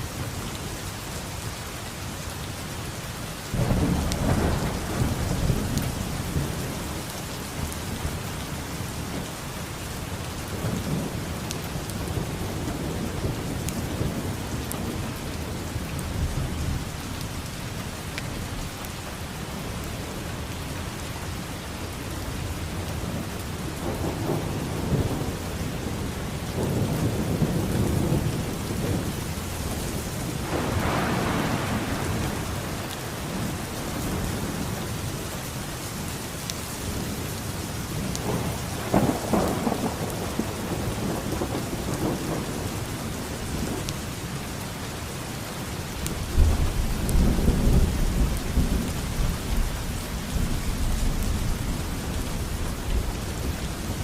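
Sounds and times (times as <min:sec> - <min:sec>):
steady rain: 0:00.0 - 0:54.0
thunder rumbling: 0:23.1 - 0:35.0, 0:38.0 - 0:43.9, 0:46.1 - 0:54.0.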